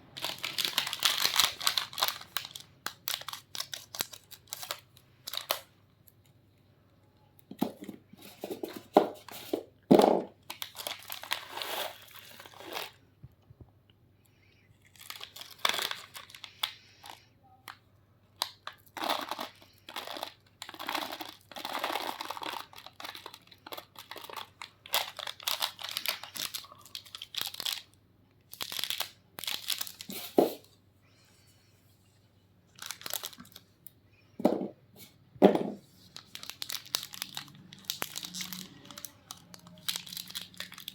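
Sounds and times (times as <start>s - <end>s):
plastic wrappers crinkling: 0.0s - 6.2s, 7.5s - 13.0s, 14.4s - 17.3s, 18.4s - 27.9s, 28.5s - 30.6s, 32.7s - 33.8s, 35.6s - 40.9s.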